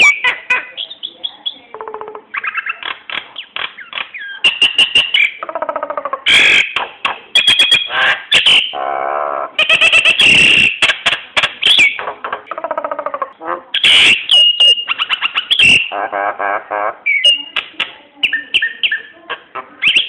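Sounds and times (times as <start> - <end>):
myna whistles clicks and squawks: 0.0 - 5.4, 6.2 - 8.8, 9.6 - 12.1, 13.8 - 16.1, 17.0 - 20.0.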